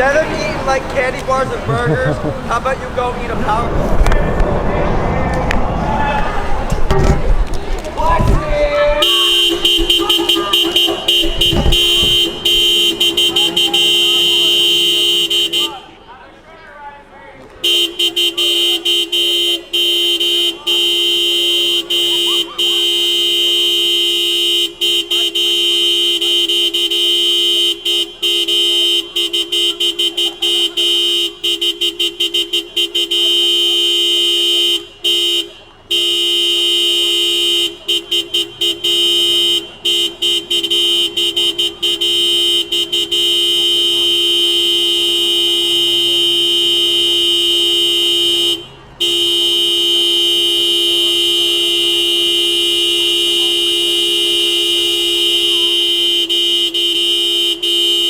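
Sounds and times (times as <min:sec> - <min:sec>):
two-tone car horn honking: 0:00.0 - 0:04.1, 0:06.7 - 0:16.2, 0:17.6 - 0:58.0.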